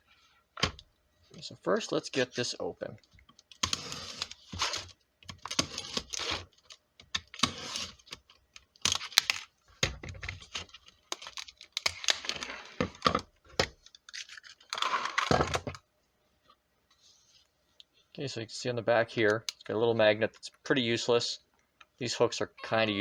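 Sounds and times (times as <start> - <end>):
packaging tearing and rustling: 3.5 - 9.5, 10.4 - 12.8, 13.8 - 15.4.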